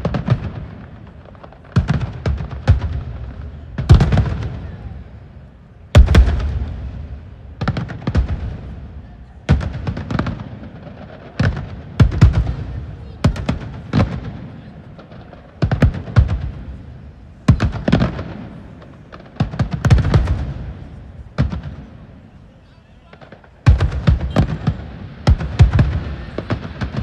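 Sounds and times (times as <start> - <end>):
fireworks booming overhead: 0.0 - 27.0
rolling echo of booms: 0.0 - 27.0.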